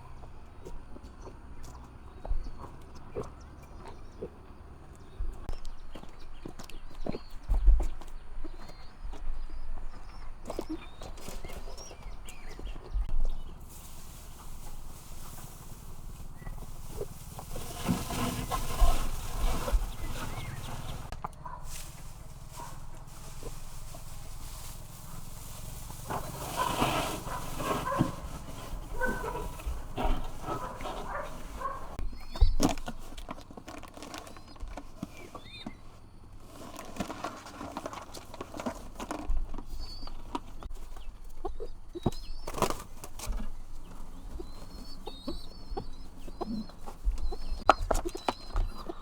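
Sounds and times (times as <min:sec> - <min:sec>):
small birds chirping: 0:00.0 - 0:49.0
chickens clucking: 0:09.9 - 0:33.1, 0:38.6 - 0:49.0.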